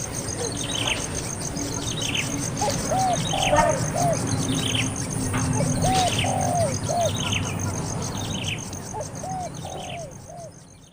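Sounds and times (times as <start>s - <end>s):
high down-slurred bird chirps: 0.2s - 10.9s
low hooting bird calls: 1.6s - 7.4s, 8.9s - 10.6s.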